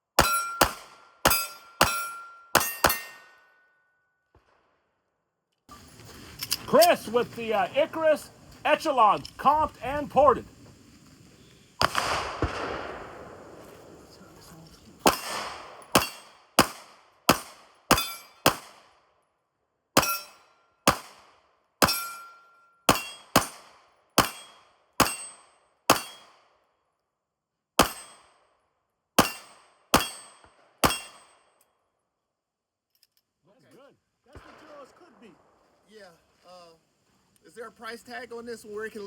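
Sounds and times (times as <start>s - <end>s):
metallic ring: 0.2s - 0.6s, 1.3s - 3.9s, 17.9s - 18.4s, 20.0s - 20.5s, 21.8s - 23.4s
pistol shots: 0.2s - 3.4s, 11.8s - 14.2s, 15.0s - 18.9s, 20.0s - 22.3s, 22.9s - 26.5s, 27.8s - 28.4s, 29.2s - 31.4s.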